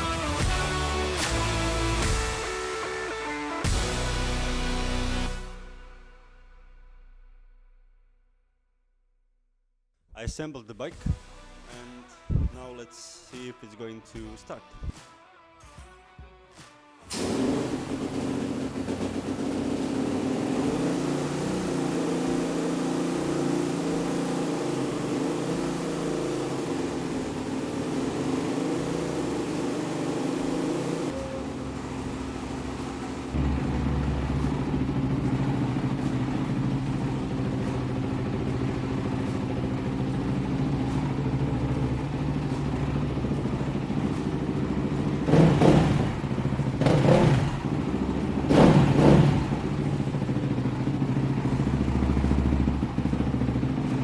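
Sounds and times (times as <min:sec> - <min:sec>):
dirt bike engine idling: 0:17.2 - 0:54.0.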